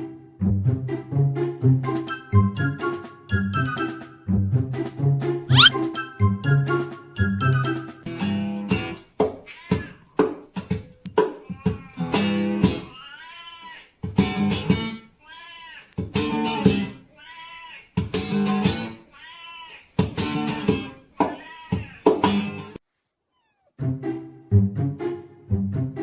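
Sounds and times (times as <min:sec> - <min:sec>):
cat meowing: 0:05.5 - 0:05.7, 0:21.3 - 0:22.0, 0:23.3 - 0:23.7.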